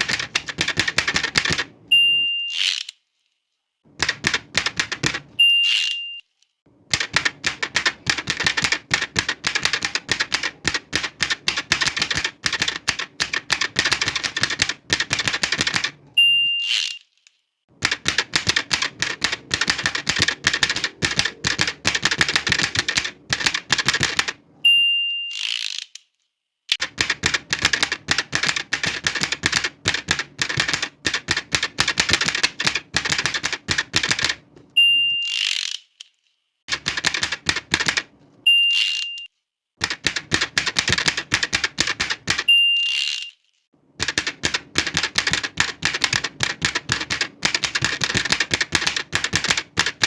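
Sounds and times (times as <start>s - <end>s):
typewriter carriage return swish: 0.0s - 1.8s, 2.5s - 3.0s, 4.0s - 6.0s, 6.9s - 17.2s, 17.8s - 24.4s, 25.3s - 26.0s, 26.7s - 38.1s, 38.7s - 43.4s, 44.0s - 50.0s
manual typewriter typing: 0.0s - 1.9s, 3.9s - 6.0s, 6.9s - 17.0s, 17.8s - 24.5s, 26.7s - 36.0s, 36.7s - 43.3s, 44.0s - 50.0s
typewriter margin bell ding: 38.5s - 39.3s.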